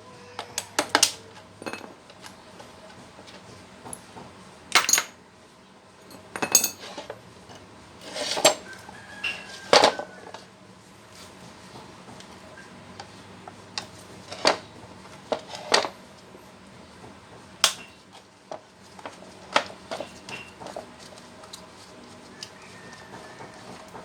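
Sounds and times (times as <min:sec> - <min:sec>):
metal parts clinking: 0:04.7 - 0:05.2, 0:06.1 - 0:07.1.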